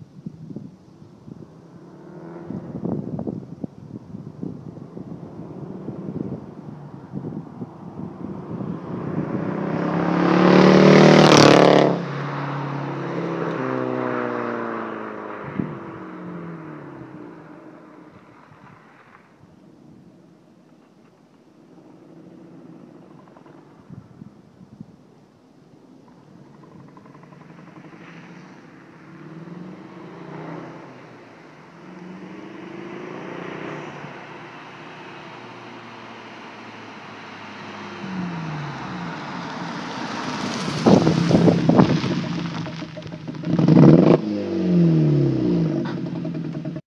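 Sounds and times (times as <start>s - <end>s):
car exhaust driving past: 26.0s - 46.8s.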